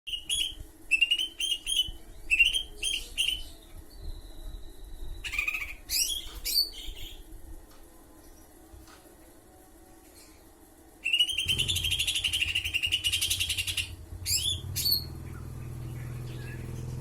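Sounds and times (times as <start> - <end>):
thin steady whistle: 0.1 - 5.5, 11.0 - 14.6
bird chirping: 0.1 - 7.3, 11.0 - 17.0
harsh bird calls: 4.6 - 7.3, 11.0 - 17.0.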